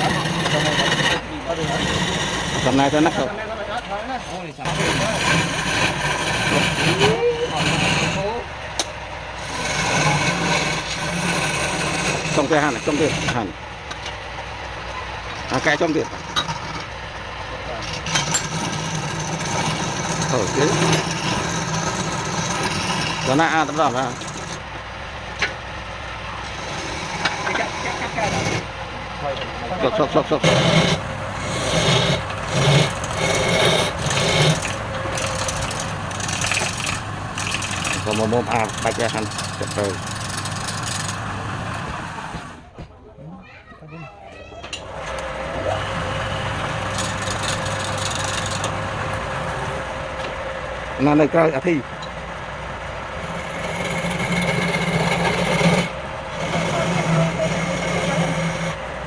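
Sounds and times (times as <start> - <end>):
turning tool cutting wood: 0.0 - 14.1, 15.2 - 17.0, 17.7 - 24.7, 26.4 - 28.8, 29.8 - 42.7, 44.8 - 50.4, 53.1 - 58.9
lathe motor hum: 0.0 - 42.8, 44.8 - 59.0.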